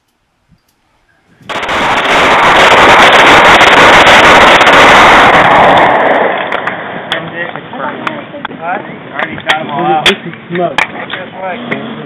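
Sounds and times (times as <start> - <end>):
automatic pistol burst: 1.4 - 6.8.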